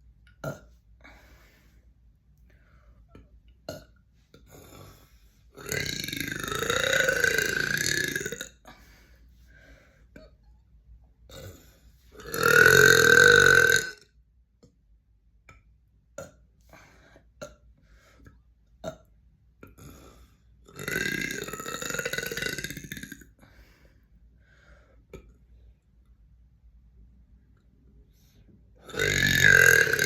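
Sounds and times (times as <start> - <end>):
person burping: 0.3 - 0.8, 3.6 - 5.0, 5.6 - 8.7, 11.3 - 11.6, 12.2 - 14.1, 18.8 - 20.0, 20.6 - 23.4, 28.8 - 30.0.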